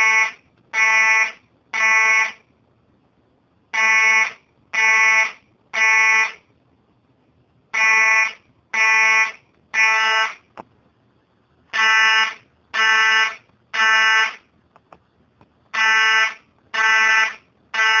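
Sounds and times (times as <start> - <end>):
fire alarm horn buzzing: 0.0 - 2.4, 3.8 - 6.4, 7.8 - 10.4, 11.7 - 14.4, 15.8 - 18.0.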